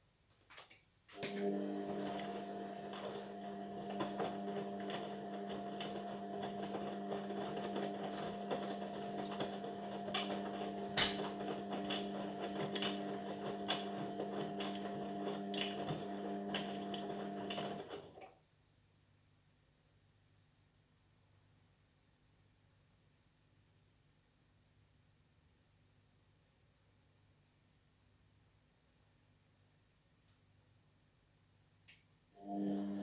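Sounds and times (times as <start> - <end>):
washing machine hum: 1.1 - 18.3, 32.4 - 33.0.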